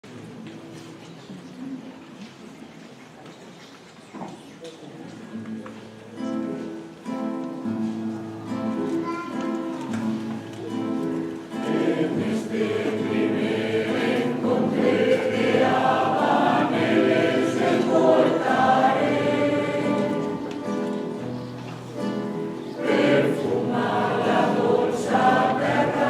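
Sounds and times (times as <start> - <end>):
mixed choir singing: 11.5 - 26.0.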